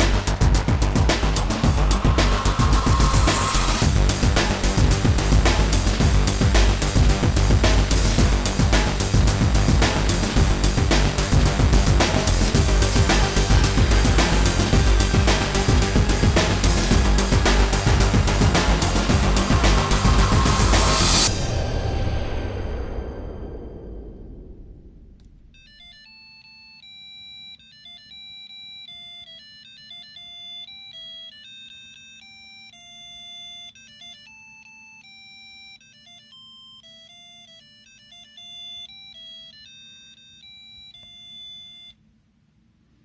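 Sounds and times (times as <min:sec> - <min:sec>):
buzzy electronic beep tune: 0:00.0 - 0:26.1.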